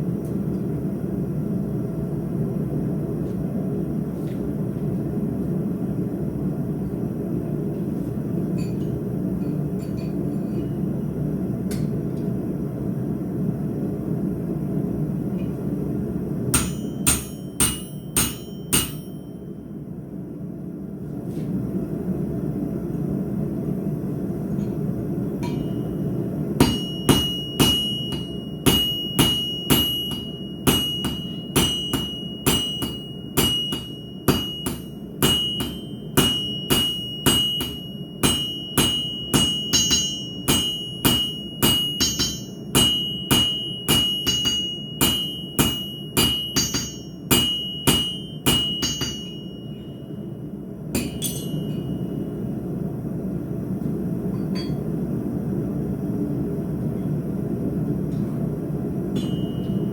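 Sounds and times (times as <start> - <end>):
hammer striking steel on anvil: 8.6 - 10.8, 16.5 - 19.5, 25.4 - 50.2, 50.9 - 52.3, 54.3 - 54.9, 59.1 - 59.9.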